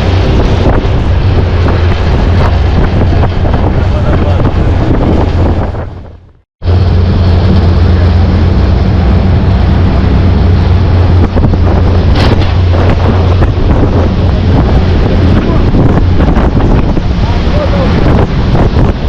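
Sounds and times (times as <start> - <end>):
boat motor droning: 0.0 - 19.0
rushing water: 0.0 - 19.0
wind buffeting the microphone: 0.0 - 19.0.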